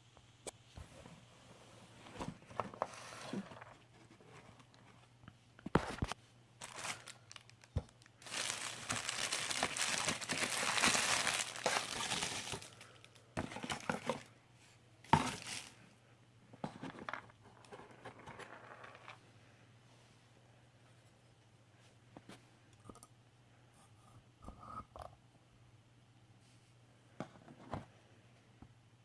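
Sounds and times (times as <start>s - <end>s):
packing material crinkling: 6.6s - 14.3s, 15.2s - 15.8s.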